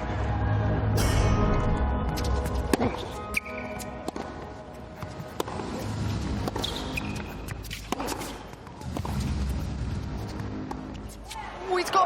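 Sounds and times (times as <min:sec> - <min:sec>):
racket striking tennis ball: 0:02.4 - 0:04.4, 0:06.4 - 0:09.2.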